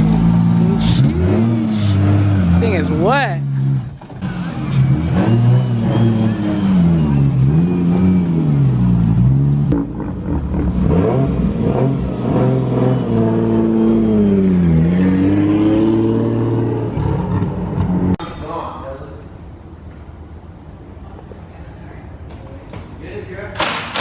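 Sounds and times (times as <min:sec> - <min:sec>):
car engine revving: 0:00.0 - 0:18.2.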